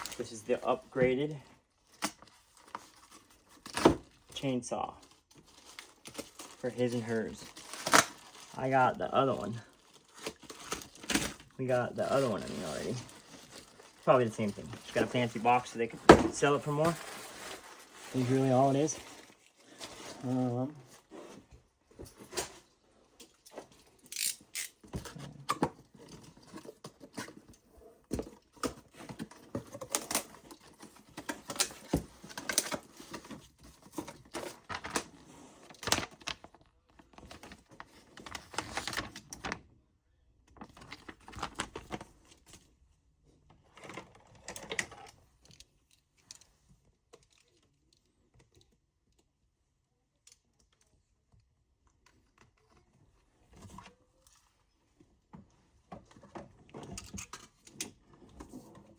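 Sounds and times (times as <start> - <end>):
cardboard box rustling: 5.1 - 22.7, 26.0 - 39.5
small hard parts clicking: 24.1 - 24.8.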